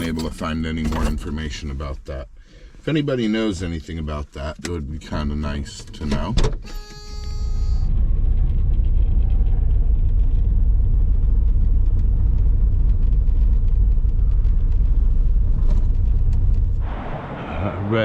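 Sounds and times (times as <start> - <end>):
loud low rumble: 7.8 - 18.0.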